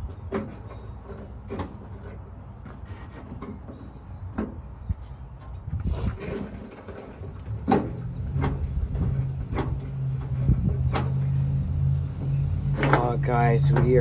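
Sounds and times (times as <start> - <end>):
metallic clicks and knocks: 12.2 - 14.0.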